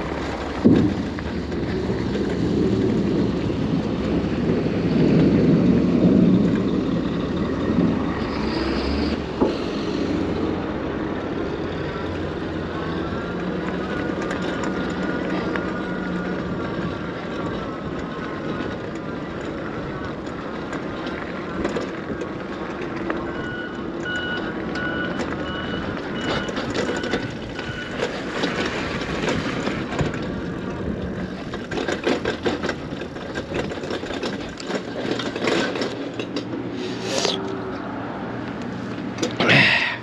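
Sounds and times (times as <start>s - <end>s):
vehicle noise: 0.0s - 40.0s
reversing alarm beeps: 23.3s - 28.0s.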